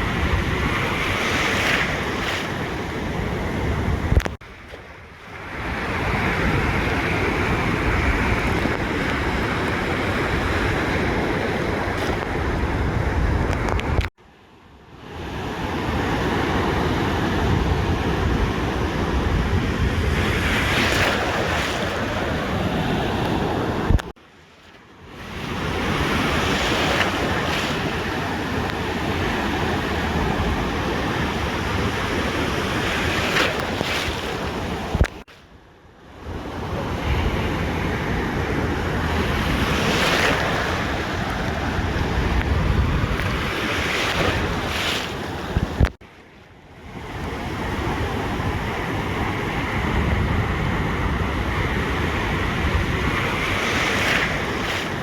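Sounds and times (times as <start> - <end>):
wind buffeting microphone: 0.0 - 14.1, 16.2 - 24.1, 36.3 - 46.0, 46.9 - 55.0
ocean surf washing onto beach: 0.0 - 35.4, 36.1 - 55.0.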